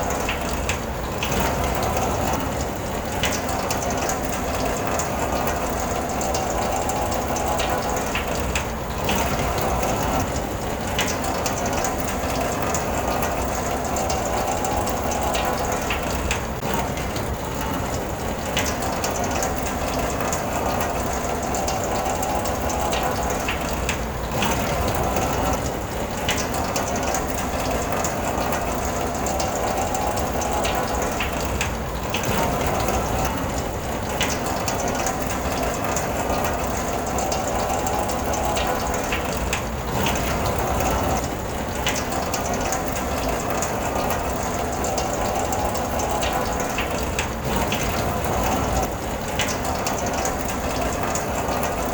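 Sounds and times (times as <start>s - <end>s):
rain drumming on car roof: 0.0s - 51.9s.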